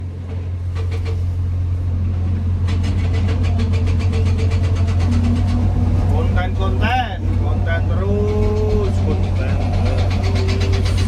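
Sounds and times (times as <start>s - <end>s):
diesel engine humming: 0.0s - 11.0s
rapid rattling clatter: 2.6s - 7.3s, 8.2s - 11.0s.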